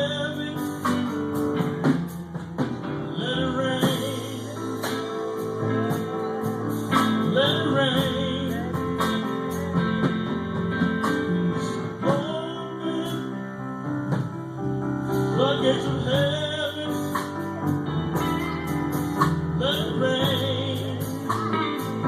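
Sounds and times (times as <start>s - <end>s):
man singing: 0.0s - 18.2s, 19.1s - 22.0s
gospel music chords: 0.0s - 22.0s
drum and cymbal hits: 0.6s - 3.2s, 3.8s - 12.4s.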